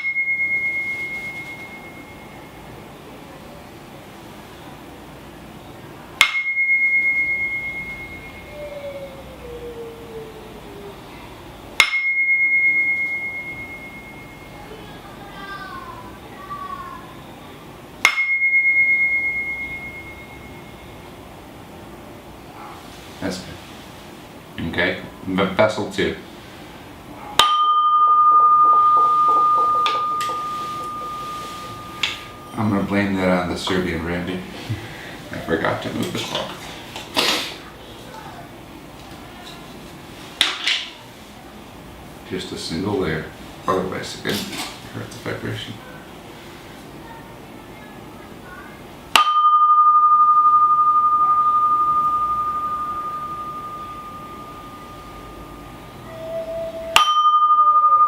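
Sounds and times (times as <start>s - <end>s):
struck bowl ringing: 0.0s - 2.8s, 6.2s - 9.1s, 11.8s - 15.0s, 18.0s - 21.2s, 27.2s - 33.8s, 49.1s - 58.0s.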